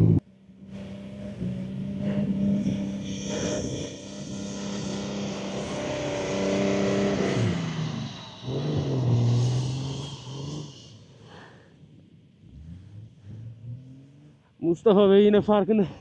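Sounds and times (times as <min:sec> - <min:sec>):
engine revving hard: 0:00.7 - 0:11.6.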